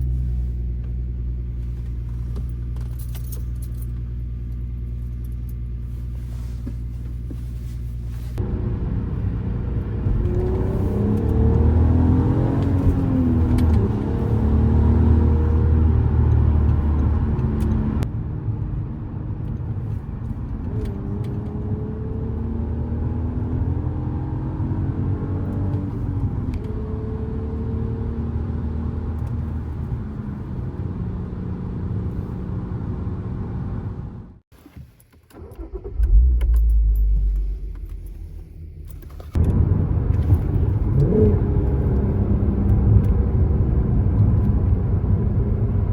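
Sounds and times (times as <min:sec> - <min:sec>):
car engine revving: 0:08.4 - 0:18.0, 0:35.7 - 0:45.9.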